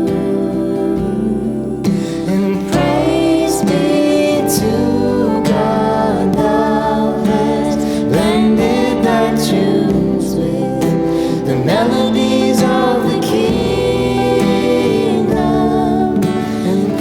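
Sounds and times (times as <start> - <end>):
sustained instrumental accompaniment: 0.0 - 17.0
vocal group singing: 0.0 - 17.0.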